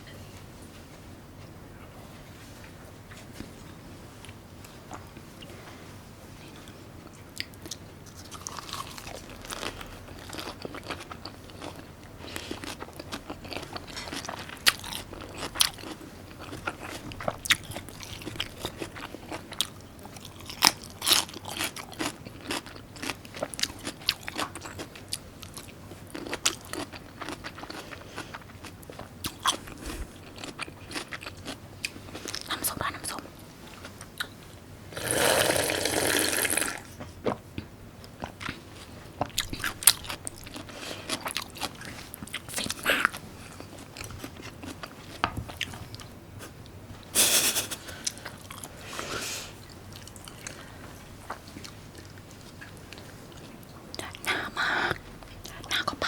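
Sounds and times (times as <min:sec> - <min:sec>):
person chewing crunchy food: 0:07.4 - 0:33.0, 0:38.2 - 0:46.1, 0:47.7 - 0:56.0.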